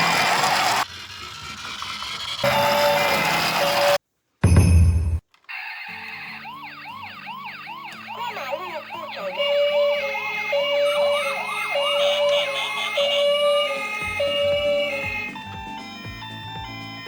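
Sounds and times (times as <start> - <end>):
toy sirens wailing: 2.4 - 4.0, 5.4 - 17.0
two-tone hi-lo siren: 2.4 - 4.0, 5.8 - 17.0.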